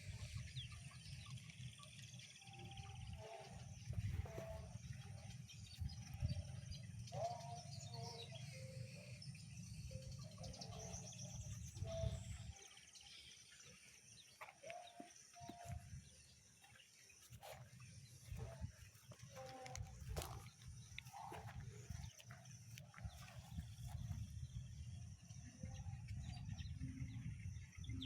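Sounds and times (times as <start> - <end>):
farmyard animals calling: 3.0 - 5.3, 18.3 - 23.4.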